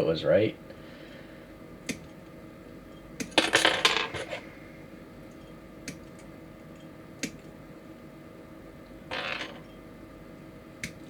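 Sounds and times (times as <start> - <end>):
plastic parts clattering on a table: 3.4 - 4.4, 9.1 - 9.7
sharp plastic clicks: 7.2 - 7.5, 10.8 - 11.0.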